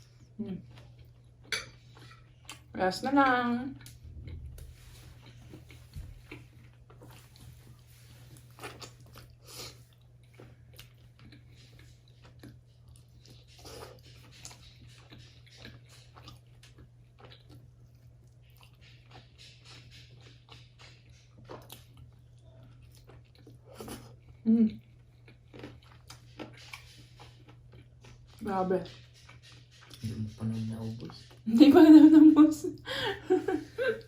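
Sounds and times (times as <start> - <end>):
steady low hum: 0.0 - 34.0
chewing and biting: 5.2 - 31.5.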